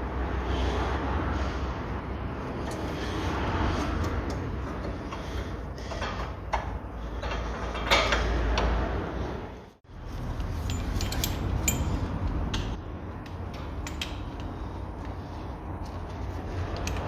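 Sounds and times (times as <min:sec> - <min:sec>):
metal brake parts clicking and scraping: 0:03.8 - 0:08.8, 0:10.2 - 0:17.0
metal parts clattering: 0:10.5 - 0:12.2.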